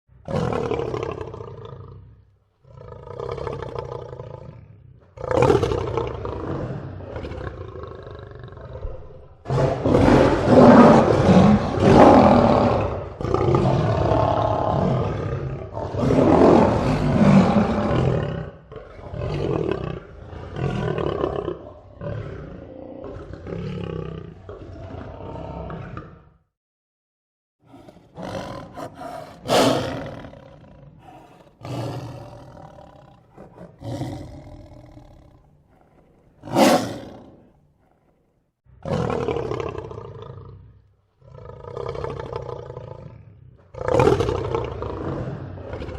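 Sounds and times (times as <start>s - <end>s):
lion roaring and grunting: 0.2s - 26.4s, 27.6s - 45.9s.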